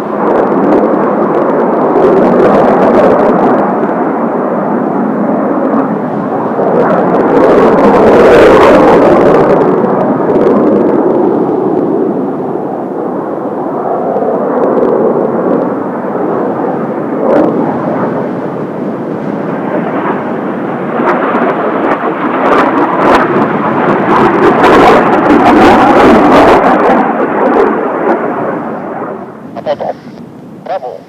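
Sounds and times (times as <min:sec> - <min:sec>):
jet roar: 0:00.0 - 0:31.0
wind on microphone: 0:00.0 - 0:31.0.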